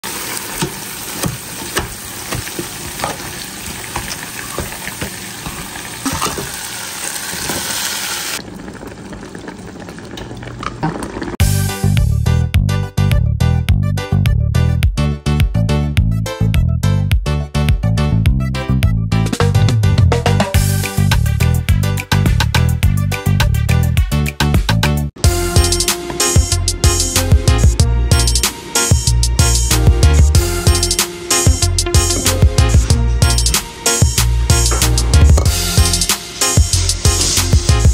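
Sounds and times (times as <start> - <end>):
food sizzling in pot: 0.0 - 11.4
stirring knocks and scrapes: 0.6 - 6.5, 34.5 - 35.5
background music with beat and bass: 11.4 - 37.9.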